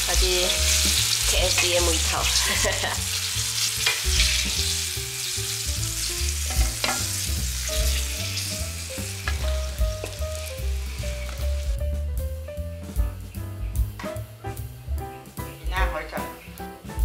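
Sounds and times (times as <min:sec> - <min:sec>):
chicken deep-frying in oil: 0:00.0 - 0:11.9
background music with bass: 0:00.0 - 0:17.0.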